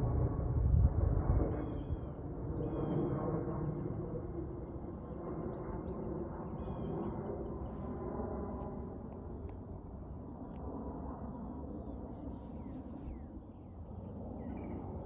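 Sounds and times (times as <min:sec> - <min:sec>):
jet airliner engine rumble: 0:00.0 - 0:15.0
small birds chirping: 0:11.8 - 0:13.8.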